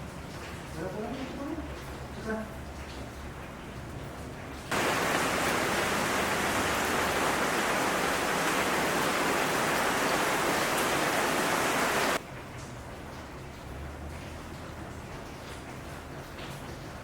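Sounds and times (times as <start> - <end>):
steady rushing hiss: 4.7 - 12.2.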